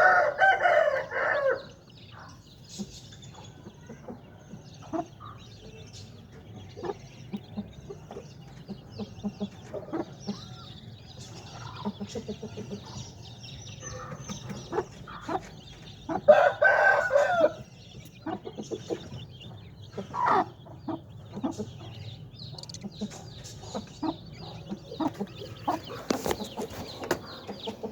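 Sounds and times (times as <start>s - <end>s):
rooster crowing: 0.0s - 1.7s, 16.3s - 17.6s
chickens clucking: 0.0s - 27.9s
chicks peeping: 0.0s - 27.9s.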